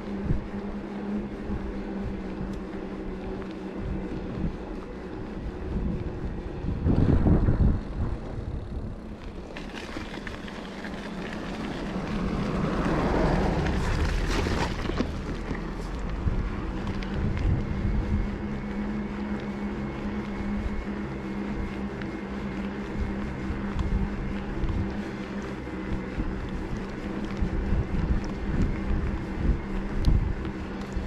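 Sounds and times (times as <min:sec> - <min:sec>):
wind on microphone: 0:00.0 - 0:19.2, 0:22.8 - 0:31.0
steady hum: 0:00.0 - 0:31.0
tyre rumble: 0:09.2 - 0:17.6.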